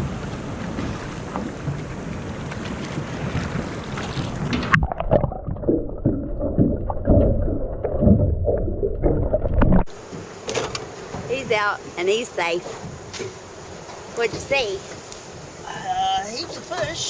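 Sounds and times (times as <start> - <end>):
underwater bubbling gurgles: 0.0 - 10.4
wind and water on microphone: 0.0 - 17.0.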